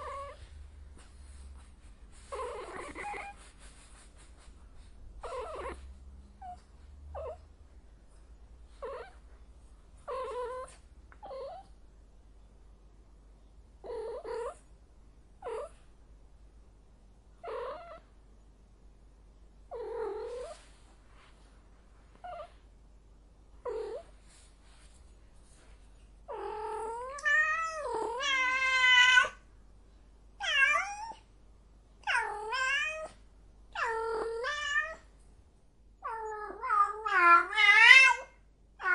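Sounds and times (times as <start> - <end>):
cat meowing and yowling: 26.4 - 29.4, 30.4 - 31.2, 32.0 - 33.2, 33.8 - 35.0, 36.0 - 38.9.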